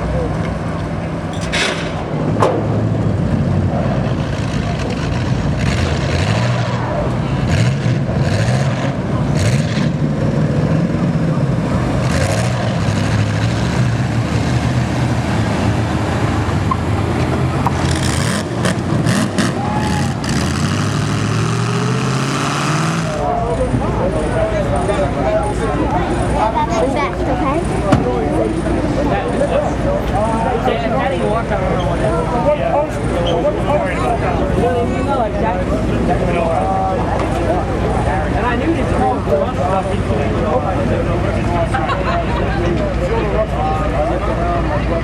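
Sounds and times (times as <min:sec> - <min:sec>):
car engines revving: 0:00.0 - 0:45.0
cars colliding bangs: 0:00.8 - 0:06.8, 0:27.6 - 0:28.4.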